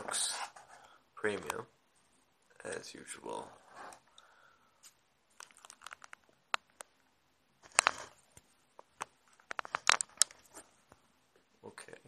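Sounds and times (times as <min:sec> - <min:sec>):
scraping and clicking: 0:09.4 - 0:10.7.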